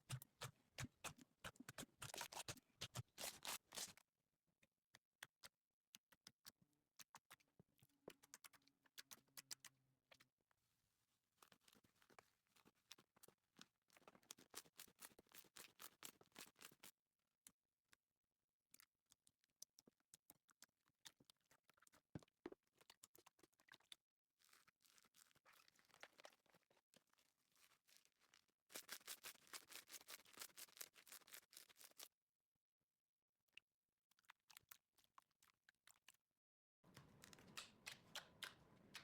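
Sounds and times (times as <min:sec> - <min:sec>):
slime clicking and popping: 0:37.0 - 0:39.0.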